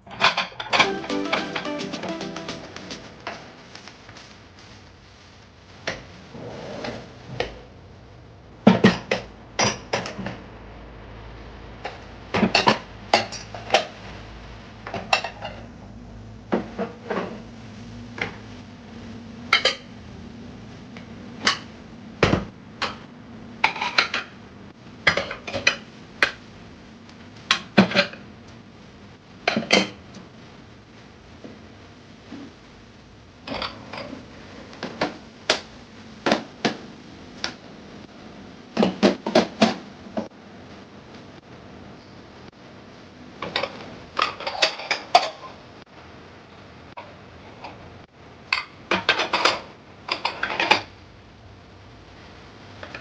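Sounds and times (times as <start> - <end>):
dishes clinking and clattering: 23.6 - 24.3, 33.4 - 34.2, 43.4 - 45.6, 48.5 - 50.9.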